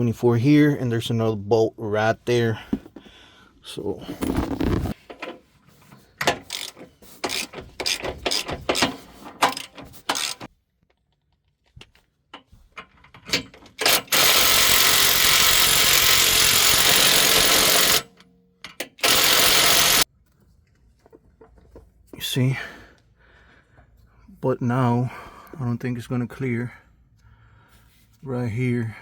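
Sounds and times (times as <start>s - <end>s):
ratchet wrench clicking: 6.4s - 8.9s, 9.6s - 10.5s, 13.8s - 18.1s, 18.7s - 20.0s
power tool running: 13.9s - 18.1s, 19.0s - 20.0s.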